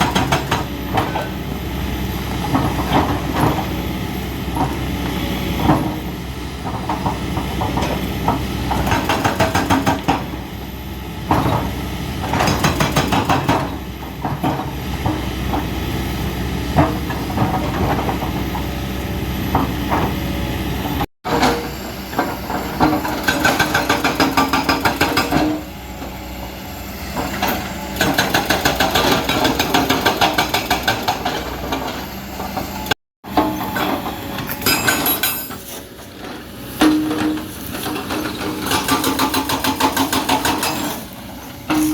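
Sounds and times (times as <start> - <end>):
diesel engine under load: 0.0 - 41.9.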